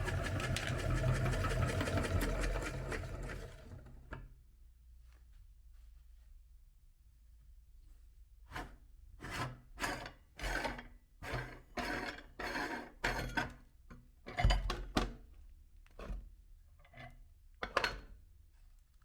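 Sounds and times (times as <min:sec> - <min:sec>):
meat grinder grinding candy: 0:00.0 - 0:03.7.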